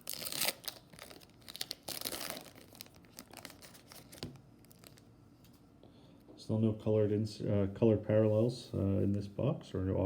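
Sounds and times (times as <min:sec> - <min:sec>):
foil wrapper tearing and crinkling: 0:00.0 - 0:05.0.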